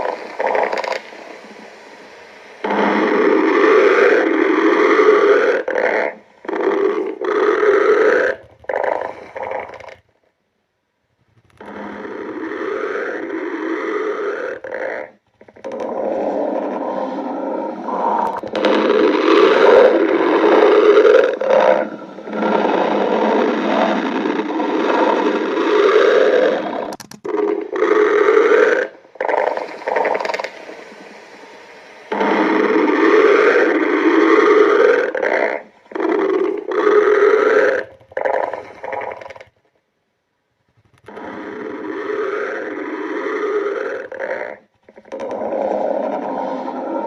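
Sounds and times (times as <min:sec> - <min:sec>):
stomach growling: 0:00.0 - 0:10.4, 0:11.0 - 0:39.9, 0:40.6 - 0:47.0.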